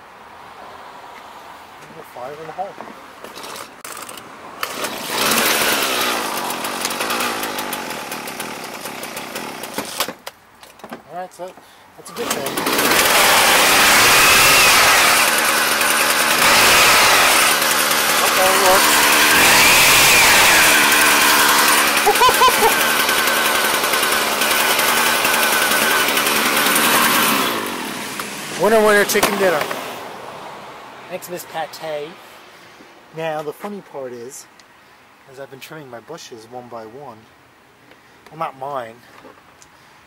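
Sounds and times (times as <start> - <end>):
hedge trimmer engine running: 3.4 - 10.1, 12.0 - 29.8.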